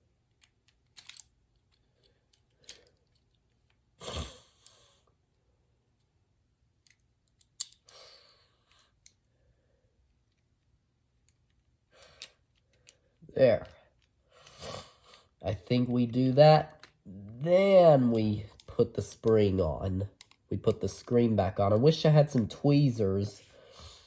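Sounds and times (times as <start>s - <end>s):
plastic toy parts clicking: 0.3s - 3.8s, 6.8s - 7.9s, 11.2s - 13.1s, 20.1s - 20.5s.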